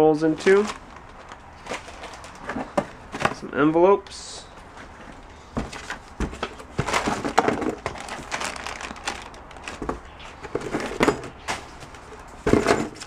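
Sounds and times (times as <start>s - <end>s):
paper rustling and crinkling: 0.3s - 3.4s, 4.7s - 13.0s
objects knocking: 5.6s - 11.6s, 12.4s - 13.0s.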